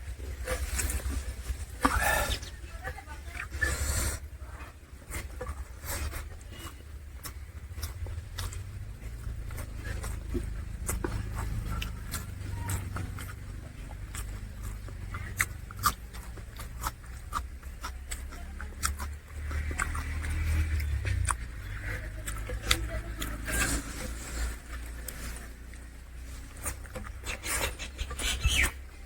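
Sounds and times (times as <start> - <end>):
man chewing food: 0.0 - 2.7, 3.3 - 29.0
steady low rumble: 0.0 - 28.1
wet smacks and mouth clicks: 5.2 - 23.8, 24.8 - 28.9.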